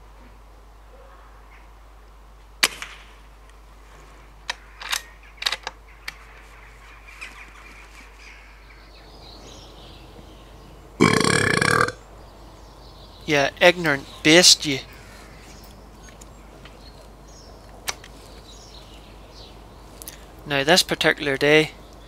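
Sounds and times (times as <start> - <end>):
air rifle shot: 2.6 - 3.2.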